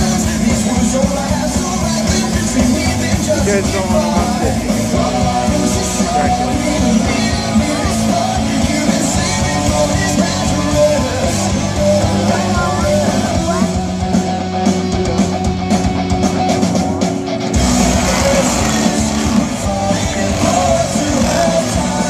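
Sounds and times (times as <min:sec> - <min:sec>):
deep bass: 0:00.0 - 0:22.0
electric guitar: 0:00.0 - 0:22.0.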